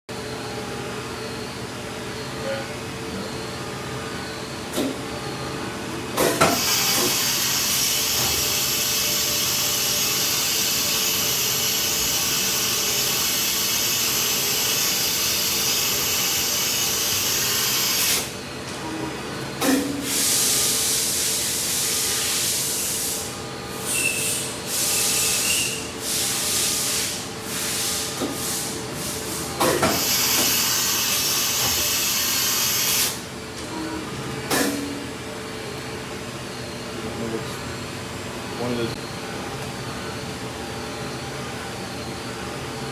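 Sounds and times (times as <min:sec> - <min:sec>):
machining center humming: 0:28.7 - 0:42.9.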